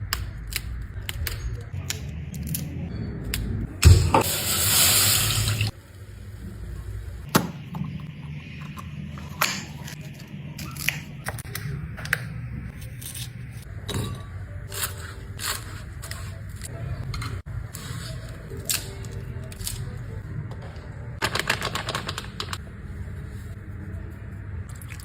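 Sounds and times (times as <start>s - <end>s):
water running: 3.9s - 7.2s.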